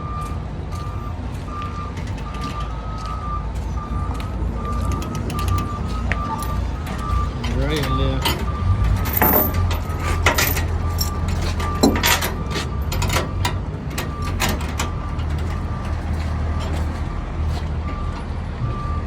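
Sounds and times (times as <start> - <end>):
high beep: 0.0 - 10.2
heavy diesel equipment rumbling: 0.0 - 19.0
metal clanks and knocks: 4.6 - 17.0.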